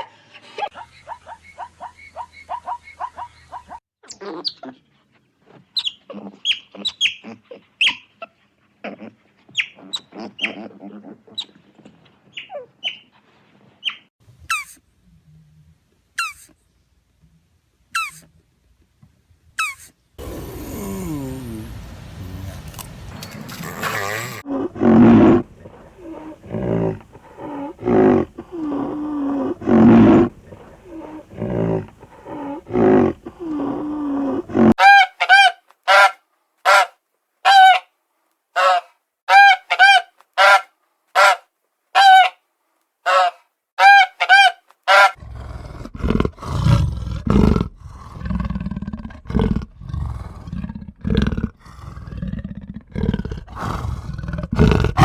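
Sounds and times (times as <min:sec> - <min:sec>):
low repeated animal calls: 0:20.2 - 0:34.8
low rough animal calls: 0:23.2 - 0:34.8.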